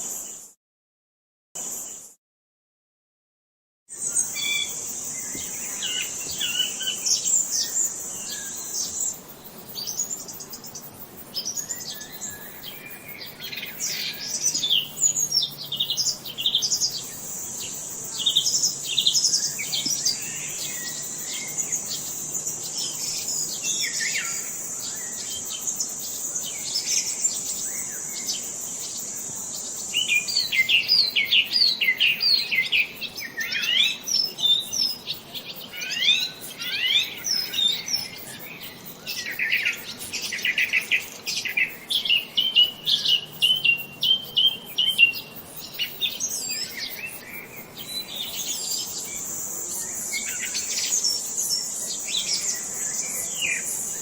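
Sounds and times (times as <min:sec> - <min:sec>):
songbirds chirping and trilling: 0:03.9 - 0:54.0
high-pitched insect drone: 0:04.0 - 0:54.0.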